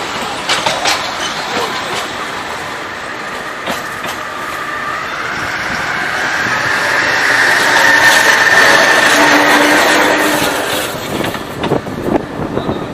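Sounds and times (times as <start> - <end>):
train running on rails: 0.0 - 12.9
train wheel squeal: 2.6 - 12.9.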